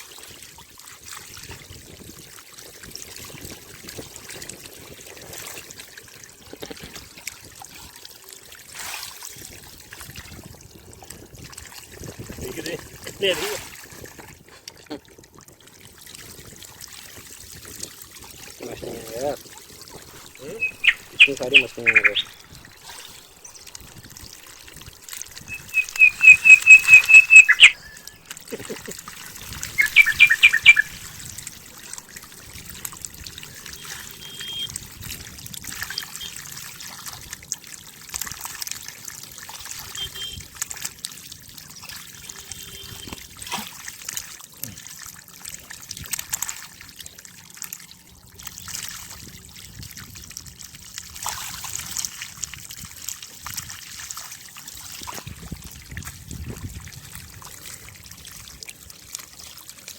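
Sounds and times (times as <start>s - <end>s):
water trickling and splashing: 0.0s - 59.9s
bird piping notes: 20.2s - 28.5s, 29.3s - 31.1s.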